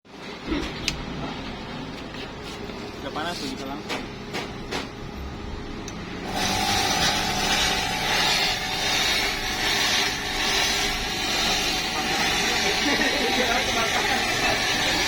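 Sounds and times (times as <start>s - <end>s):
fogging machine hissing: 6.3s - 15.0s.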